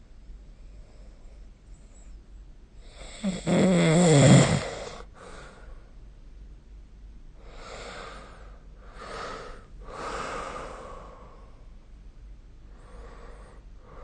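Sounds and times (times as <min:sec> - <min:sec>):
sleeping person breathing noisily: 0:02.8 - 0:05.9, 0:07.4 - 0:11.7, 0:12.7 - 0:14.0.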